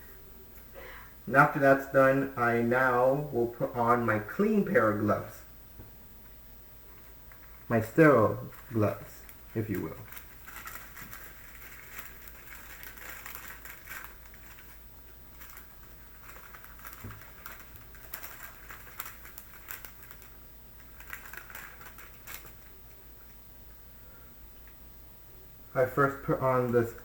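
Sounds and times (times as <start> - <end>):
paper wrapper rustling: 8.4 - 22.9.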